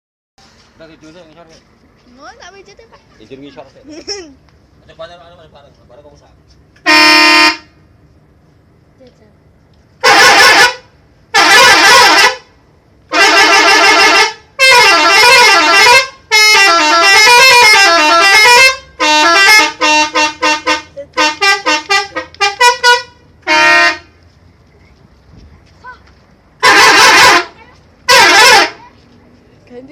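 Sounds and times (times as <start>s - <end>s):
multi-tone bus horn: 6.8s - 7.8s, 10.0s - 24.2s, 26.6s - 28.8s.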